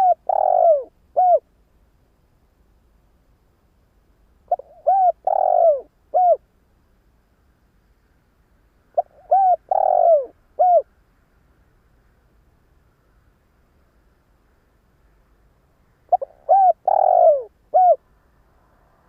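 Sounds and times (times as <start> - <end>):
dove cooing: 0.0 - 1.4, 4.5 - 6.4, 9.0 - 10.9, 16.1 - 18.0.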